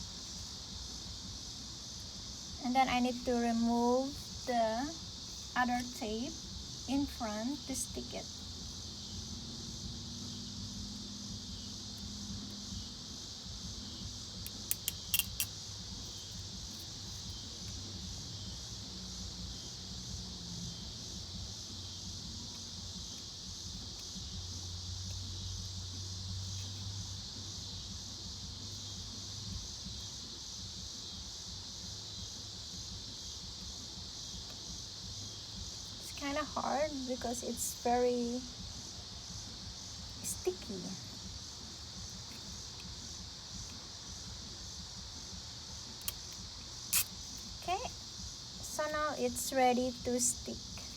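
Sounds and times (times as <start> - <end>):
insects chirring: 0.0 - 50.9
sharp clicks: 14.4 - 15.5, 46.0 - 47.2.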